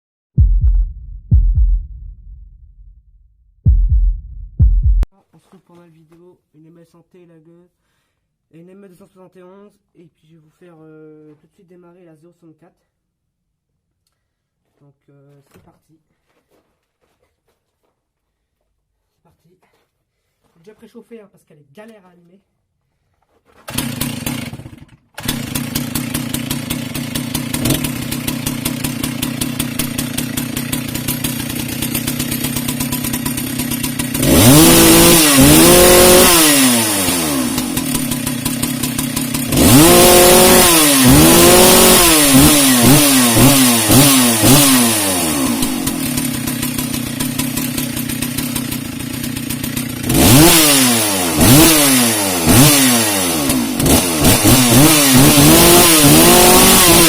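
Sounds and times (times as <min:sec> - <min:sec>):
chainsaw idling and revving: 0:23.6 - 0:57.0.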